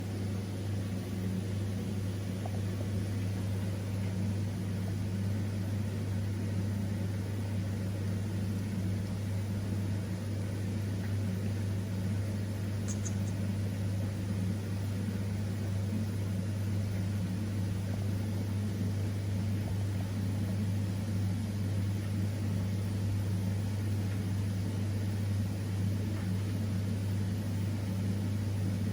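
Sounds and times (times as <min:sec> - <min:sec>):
low mechanical hum: 0:00.0 - 0:28.9
faint high ticks: 0:12.8 - 0:13.4.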